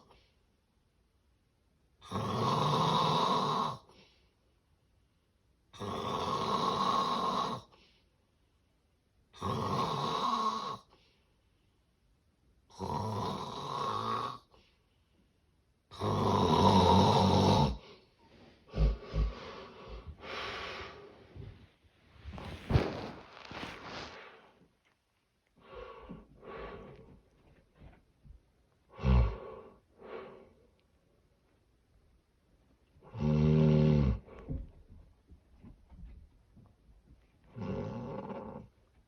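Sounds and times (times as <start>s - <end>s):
loud rough snores: 2.0s - 3.8s, 5.8s - 7.7s, 9.4s - 10.8s, 12.7s - 14.4s, 16.0s - 17.8s, 28.9s - 29.7s, 33.1s - 34.3s, 37.6s - 38.7s
irregular snorts and breaths: 16.0s - 24.7s, 25.6s - 28.1s, 28.9s - 30.8s.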